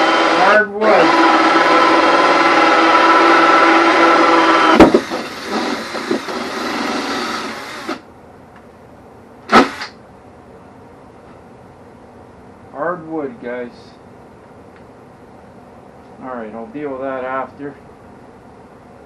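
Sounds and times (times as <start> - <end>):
loud burst of noise: 0.0 - 8.0, 9.5 - 10.0
power drill cutting hardwood: 0.0 - 8.0, 9.5 - 9.9
sharp knock: 4.7 - 6.5.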